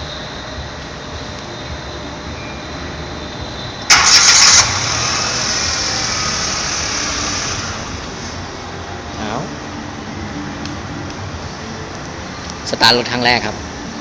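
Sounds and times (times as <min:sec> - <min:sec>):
car engine idling: 0:03.1 - 0:12.5
car engine starting: 0:03.8 - 0:12.2.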